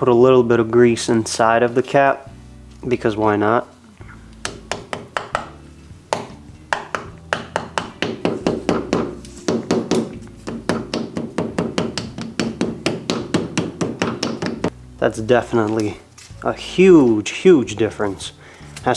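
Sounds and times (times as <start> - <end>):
hammer tapping metal cap: 4.4 - 14.7.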